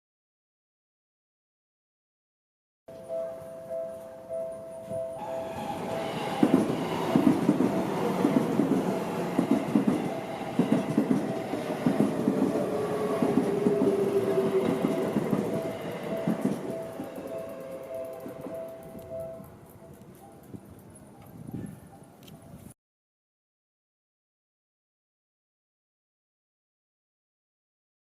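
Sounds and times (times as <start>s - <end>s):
two-tone crossing warning bell: 2.9s - 22.2s
train wheels clattering over rails: 5.5s - 21.7s.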